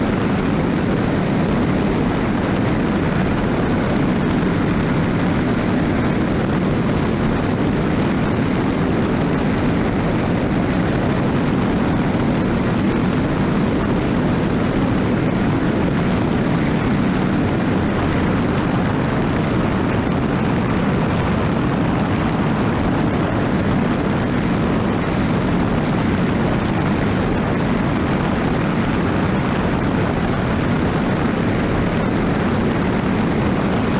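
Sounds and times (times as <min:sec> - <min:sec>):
speedboat engine running loud: 0:00.0 - 0:33.9.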